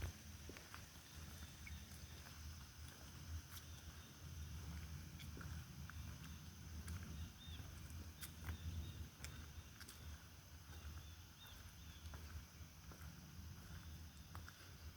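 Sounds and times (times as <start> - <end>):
faint chirps: 0.9 - 2.6
wind rumble on microphone: 1.2 - 14.6.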